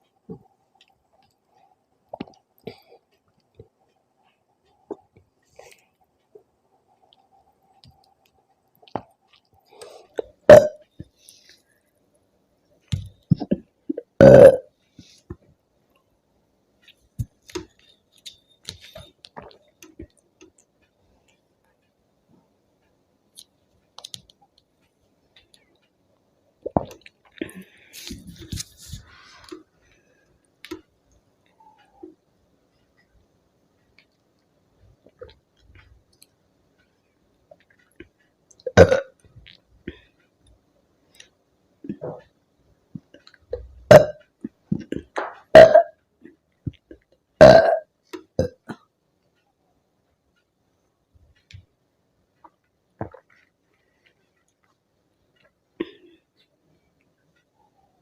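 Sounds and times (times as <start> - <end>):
woman burping loudly: 10.5 - 10.8, 13.4 - 14.7, 38.7 - 39.1, 43.9 - 44.2, 44.9 - 46.0, 47.4 - 47.8.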